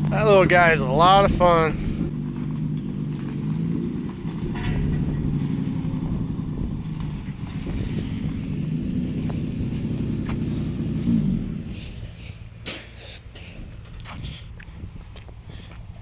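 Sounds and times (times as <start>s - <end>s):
engine revving: 0.0s - 13.0s
buggy engine running: 0.0s - 16.0s.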